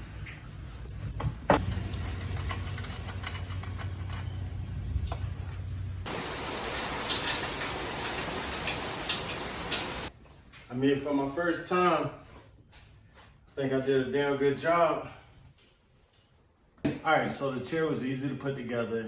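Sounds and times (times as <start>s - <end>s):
steady hiss: 6.1s - 10.1s.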